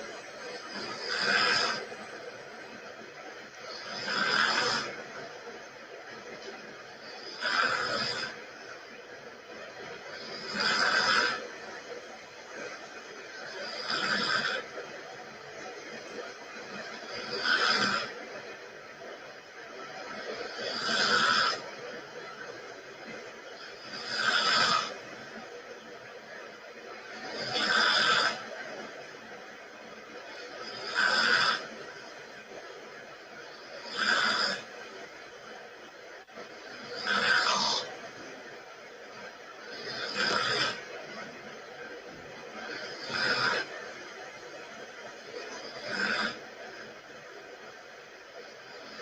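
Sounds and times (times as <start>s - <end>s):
person snoring: 0.6s - 1.9s, 3.7s - 4.9s, 10.1s - 11.4s, 33.7s - 34.7s, 36.6s - 37.9s.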